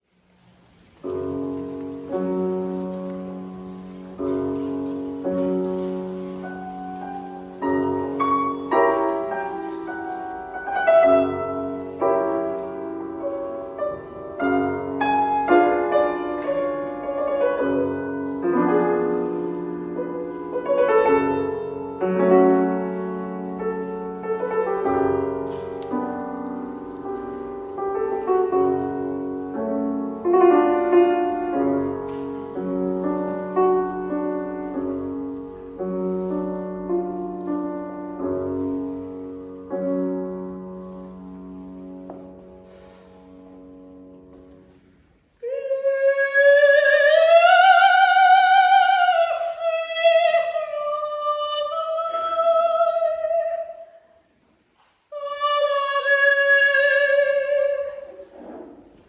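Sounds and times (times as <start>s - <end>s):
solo piano chords and melody: 0.2s - 45.6s.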